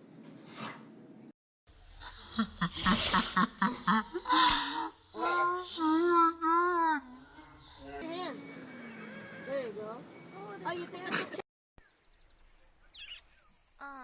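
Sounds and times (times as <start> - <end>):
drawn-out wavering cries: 7.0 - 11.0.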